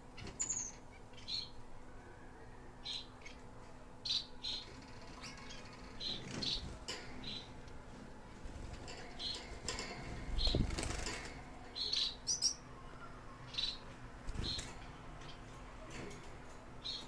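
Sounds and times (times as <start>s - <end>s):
finches chirping: 0.2s - 1.6s, 11.7s - 15.5s
wings flapping: 8.4s - 11.6s, 14.2s - 14.9s.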